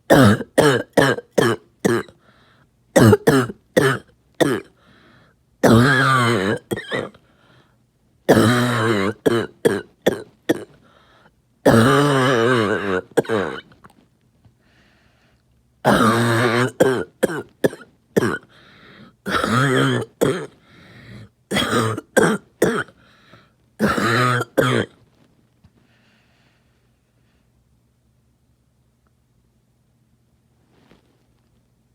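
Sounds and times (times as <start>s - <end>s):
person coughing: 0.1s - 2.2s, 3.0s - 4.8s, 5.6s - 7.2s, 8.3s - 10.8s, 11.7s - 13.7s, 15.9s - 18.6s, 19.3s - 23.0s, 23.8s - 25.0s.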